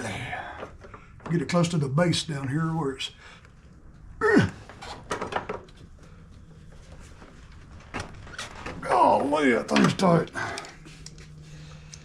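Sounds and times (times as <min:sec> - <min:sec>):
man grunting with effort: 0:04.2 - 0:04.7.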